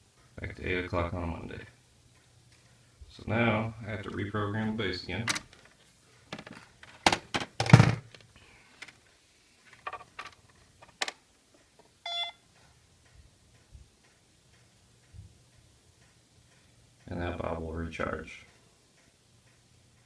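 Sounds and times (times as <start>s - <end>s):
short electronic beep: 12.0s - 12.4s.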